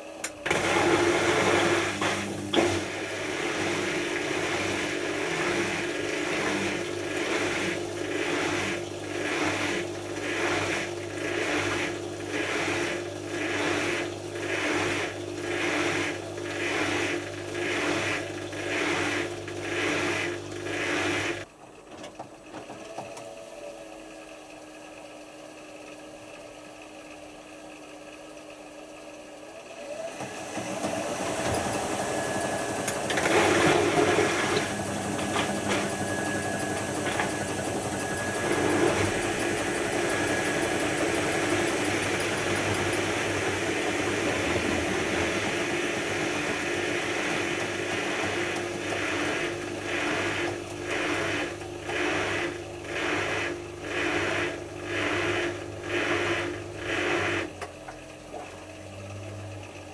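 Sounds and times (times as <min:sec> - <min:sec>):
washing machine drum turning: 0:30.2 - 0:56.8.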